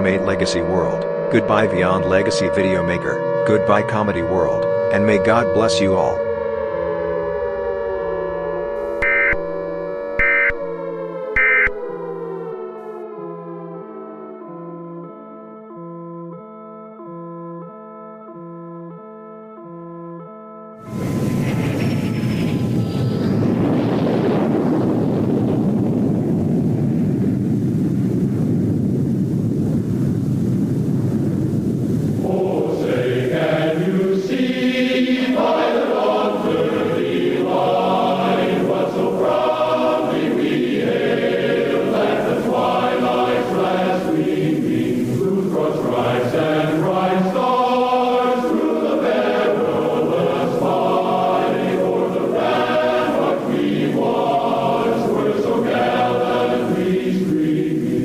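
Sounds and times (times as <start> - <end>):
choir singing an anthem: 0.0 - 7.6, 32.1 - 58.0
low rumble: 20.9 - 34.3.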